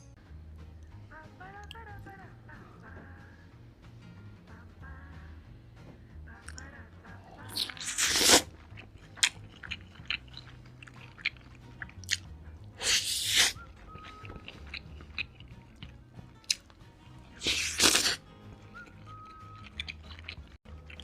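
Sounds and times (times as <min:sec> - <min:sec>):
background music: 0:00.0 - 0:21.0
wet chewing clicks: 0:06.4 - 0:21.0
crunchy food crunching: 0:07.2 - 0:21.0.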